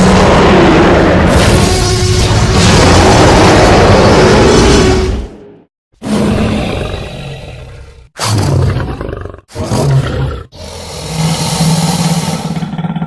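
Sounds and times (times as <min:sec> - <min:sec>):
dinosaur roars: 0:06.0 - 0:13.0.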